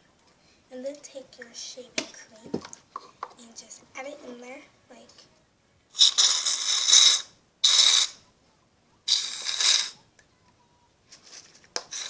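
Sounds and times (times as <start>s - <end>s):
aerosol can spraying: 6.0s - 8.2s, 9.1s - 10.0s.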